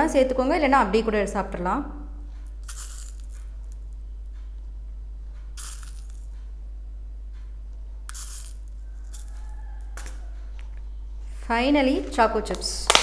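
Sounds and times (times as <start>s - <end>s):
steady low hum: 0.0s - 13.0s
sprinkles rattling from container: 2.6s - 3.4s, 5.6s - 6.2s.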